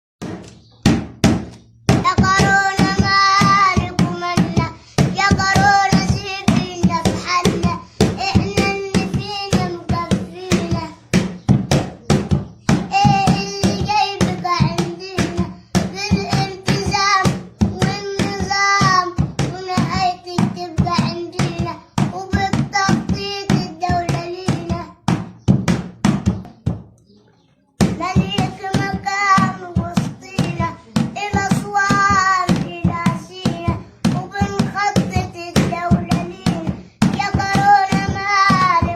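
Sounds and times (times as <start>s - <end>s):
quick percussive beat: 0.2s - 27.0s
boy singing: 1.9s - 25.3s, 26.1s - 38.9s.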